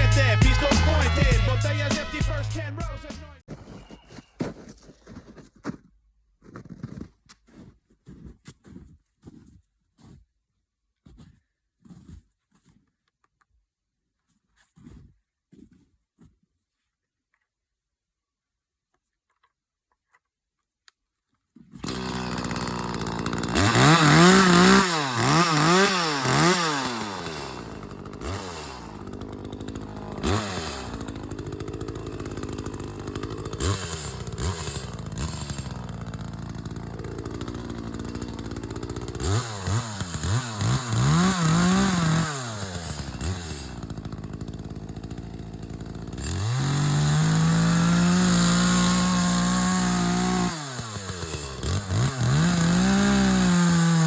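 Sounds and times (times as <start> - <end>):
chainsaw engine revving: 21.8 - 54.0.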